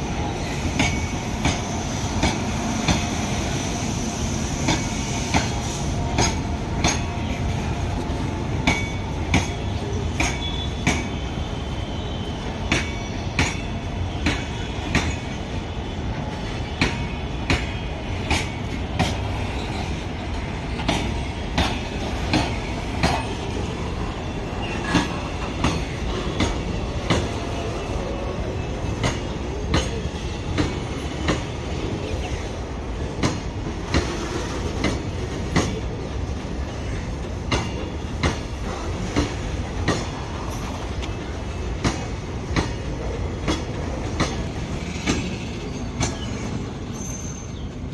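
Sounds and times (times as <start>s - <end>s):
train low rumble: 0.0s - 47.9s
train wheels clacking over rail joints: 0.2s - 11.4s, 12.6s - 28.1s, 28.8s - 47.4s
faint wheel squeal: 45.7s - 47.7s.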